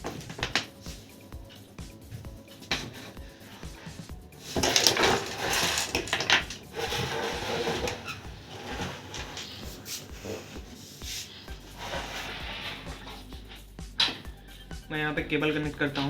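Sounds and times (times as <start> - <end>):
metal casing clattering: 0.0 - 10.7.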